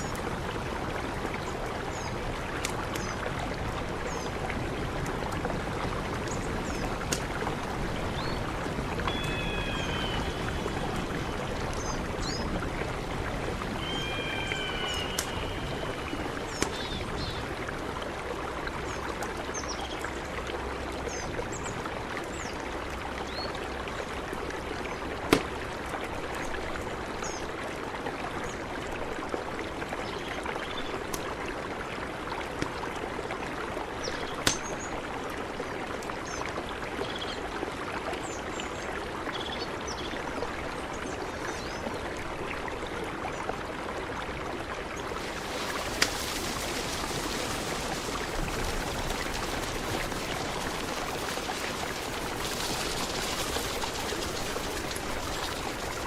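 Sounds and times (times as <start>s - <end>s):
river rushing: 0.0s - 19.7s, 44.2s - 56.0s.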